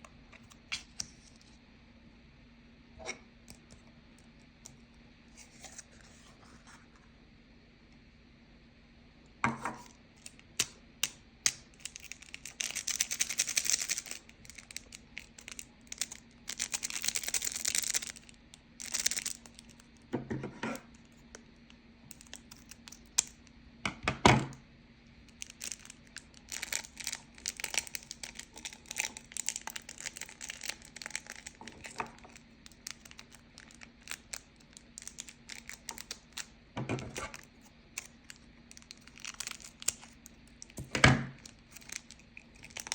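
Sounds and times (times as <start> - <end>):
crinkling and tearing: 11.5 - 19.8, 25.3 - 36.5, 37.1 - 42.9.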